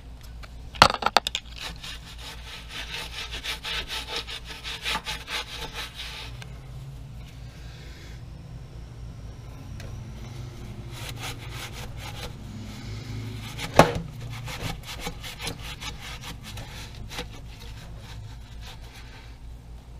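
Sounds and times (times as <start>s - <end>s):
steady low hum: 0.0s - 19.9s
scrubbing strokes on machine parts: 1.5s - 7.6s, 10.2s - 19.4s.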